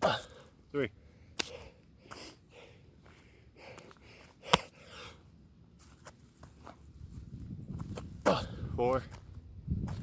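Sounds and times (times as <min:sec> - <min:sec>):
man breathing hard: 0:00.0 - 0:05.3, 0:08.2 - 0:08.8.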